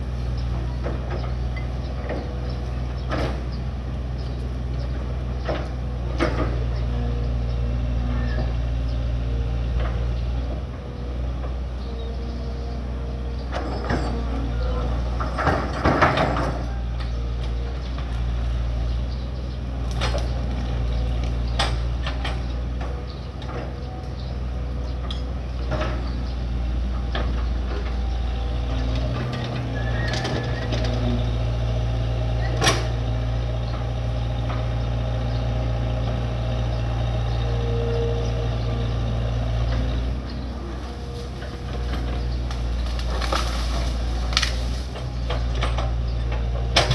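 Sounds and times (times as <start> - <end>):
excavator diesel engine droning: 0.0 - 46.9
metallic clanks and knocks: 13.5 - 17.2, 43.0 - 46.9.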